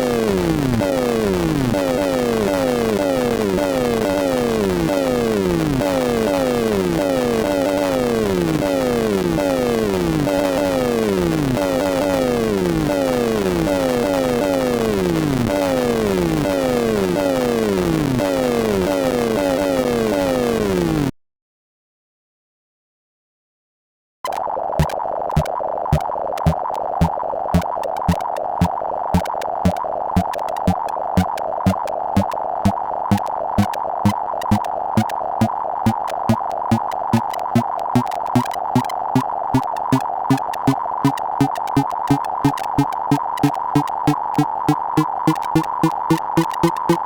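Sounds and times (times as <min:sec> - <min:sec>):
regular low pulse: 0:24.8 - 0:28.3, 0:29.2 - 0:35.1, 0:35.9 - 0:47.0
short sine-tone blips: 0:24.8 - 0:47.0.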